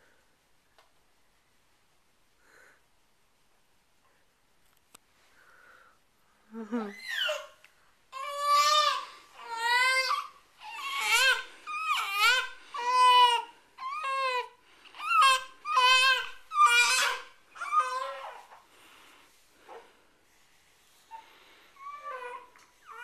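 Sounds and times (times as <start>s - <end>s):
baby crying: 6.9s - 18.6s, 21.8s - 23.0s.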